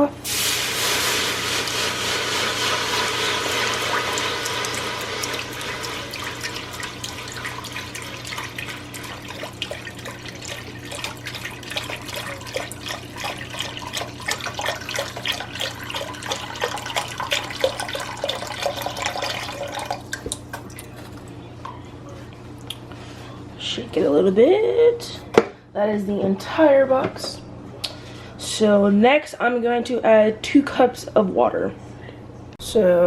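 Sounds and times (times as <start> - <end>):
broth pouring and splashing into pot: 0.2 - 21.3.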